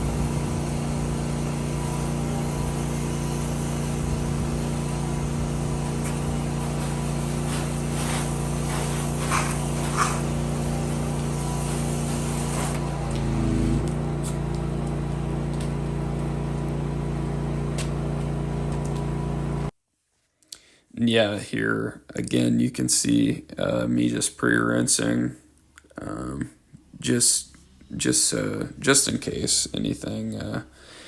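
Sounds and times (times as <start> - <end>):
pressure washer engine running: 0.0 - 19.7.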